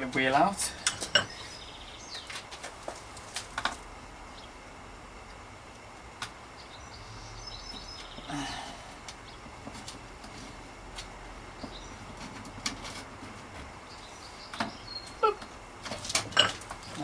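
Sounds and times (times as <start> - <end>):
birds chirping faintly: 0.0 - 10.6, 11.2 - 12.6, 13.6 - 17.0.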